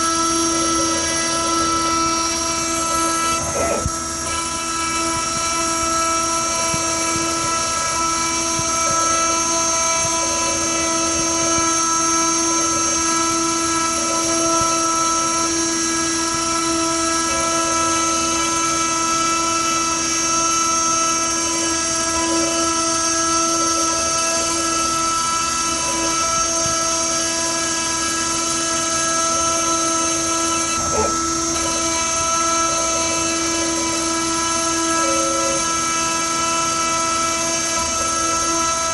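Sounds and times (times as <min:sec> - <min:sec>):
router spindle whine: 0:00.0 - 0:38.9
fainter tone: 0:30.3 - 0:35.8.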